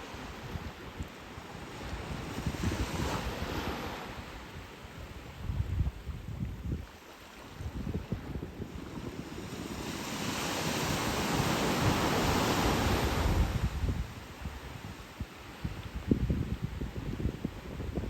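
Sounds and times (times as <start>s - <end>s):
wind buffeting microphone: 0.0s - 18.0s
wave breaking on shore: 1.6s - 4.5s, 7.2s - 16.0s.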